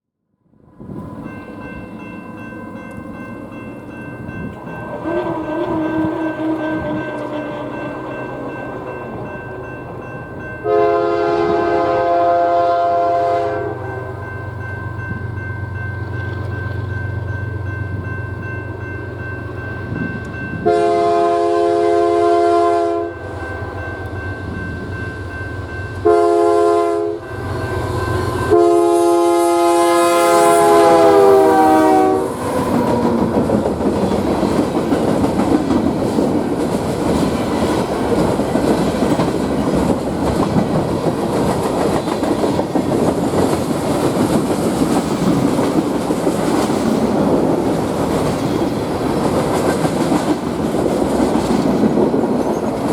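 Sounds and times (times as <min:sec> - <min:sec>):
train cars rumbling: 0:00.8 - 0:52.9
locomotive air horn blasts: 0:04.9 - 0:08.2, 0:10.6 - 0:14.2, 0:20.6 - 0:23.4, 0:26.0 - 0:32.4
wheels clacking on rail joints: 0:32.4 - 0:52.9.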